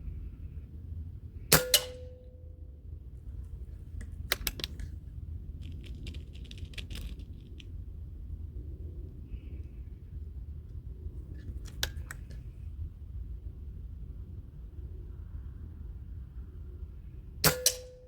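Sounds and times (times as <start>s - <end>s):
air rifle shot crack: 1.5s - 2.2s, 17.4s - 18.0s
clicking and rattling: 5.6s - 7.7s.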